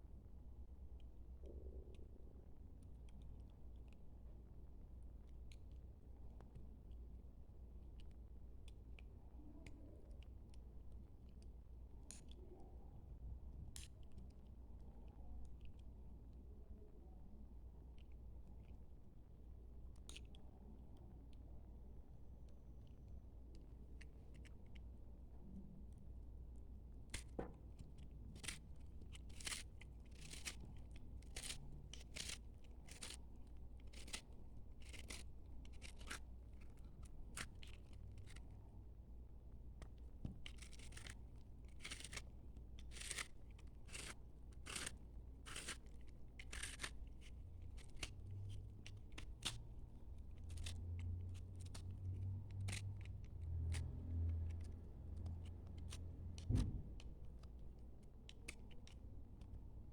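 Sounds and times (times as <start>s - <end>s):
knife cutting through soap: 27.1s - 38.6s, 39.7s - 57.5s.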